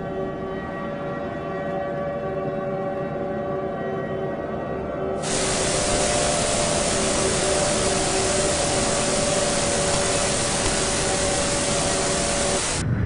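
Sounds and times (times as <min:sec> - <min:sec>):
faint steady tones: 0:05.2 - 0:12.8
white-noise static hiss: 0:05.2 - 0:12.8.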